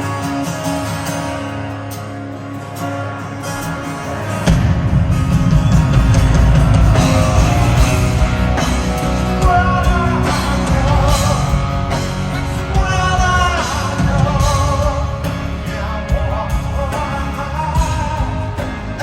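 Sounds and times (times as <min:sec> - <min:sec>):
rock band playing live: 0:00.0 - 0:19.0
strummed guitar: 0:00.0 - 0:19.0
singer's vocal: 0:06.9 - 0:19.0.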